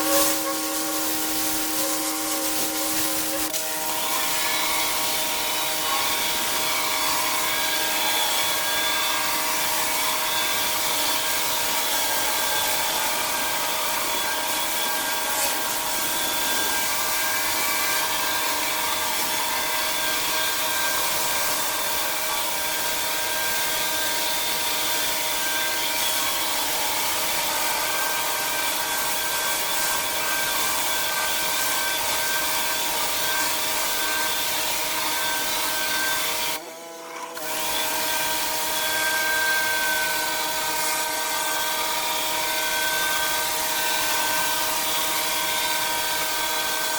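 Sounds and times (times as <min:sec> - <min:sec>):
pressure washer spraying: 0:00.0 - 0:36.6.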